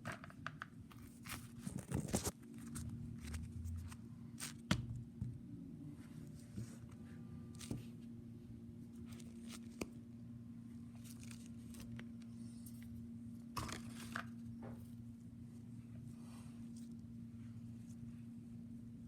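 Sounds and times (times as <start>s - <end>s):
small clicks and crinkles: 0.0s - 4.6s, 10.9s - 13.0s
steady low hum: 0.0s - 19.0s.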